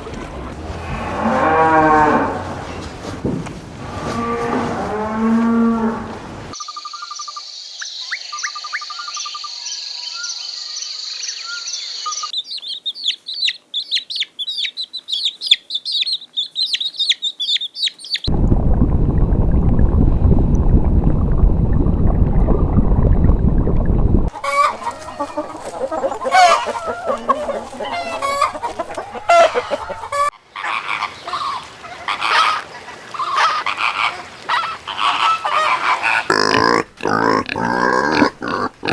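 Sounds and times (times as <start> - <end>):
high chirping calls: 6.6 - 18.3
rooster crowing: 24.3 - 32.5
chickens clucking: 24.3 - 38.9.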